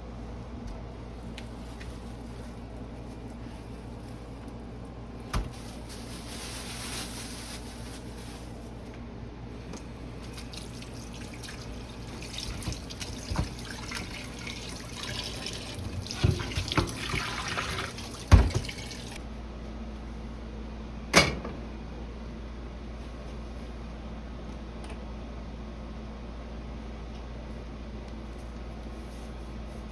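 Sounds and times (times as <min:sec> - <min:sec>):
tap water running into sink: 0:10.2 - 0:19.2.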